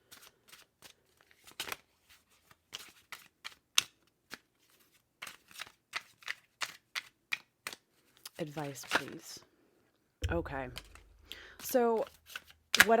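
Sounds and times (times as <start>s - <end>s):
cards being shuffled: 0.1s - 9.2s, 10.7s - 13.0s.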